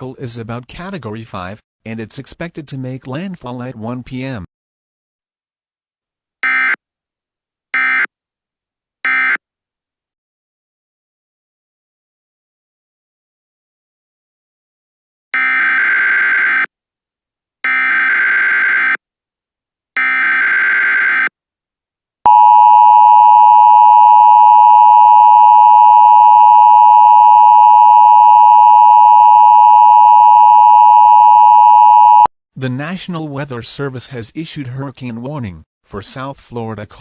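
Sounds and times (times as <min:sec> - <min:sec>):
two-tone alert signal: 0:22.3 - 0:32.3.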